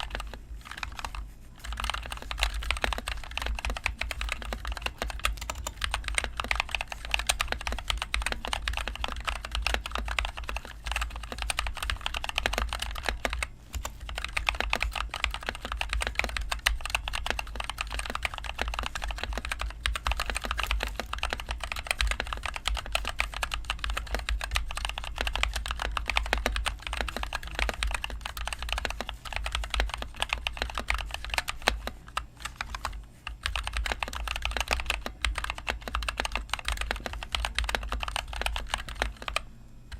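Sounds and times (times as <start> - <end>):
mechanical keyboard typing: 0.0 - 39.4
steady low hum: 0.0 - 39.9.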